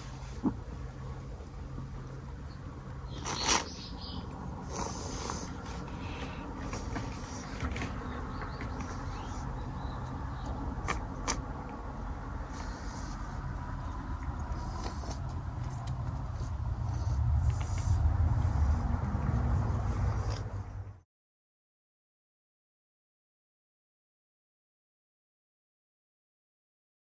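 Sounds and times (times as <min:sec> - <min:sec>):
steady low rumble: 0:00.0 - 0:21.0.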